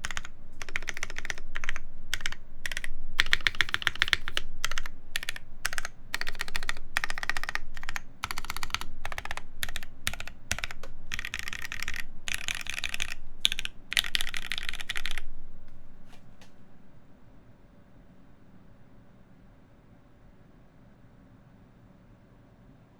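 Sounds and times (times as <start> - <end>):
mechanical keyboard typing: 0.0 - 15.3.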